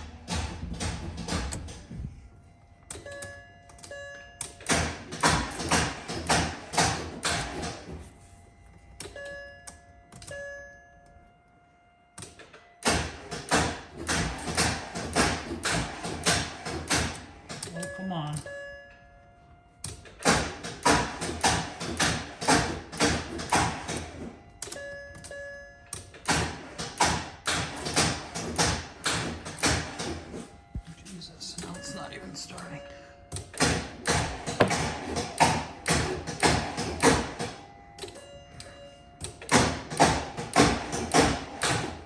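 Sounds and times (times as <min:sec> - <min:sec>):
chime tones: 0:30.8 - 0:33.2.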